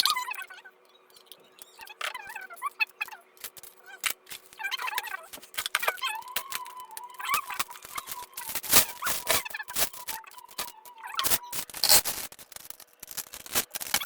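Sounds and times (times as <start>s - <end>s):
plastic packaging rustling: 5.2s - 14.0s.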